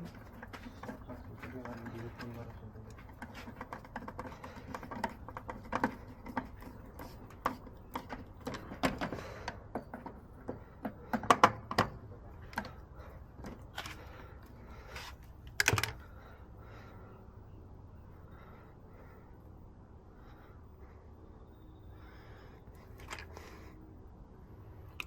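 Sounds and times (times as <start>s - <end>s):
hand tools clicking and knocking: 0.0s - 12.8s.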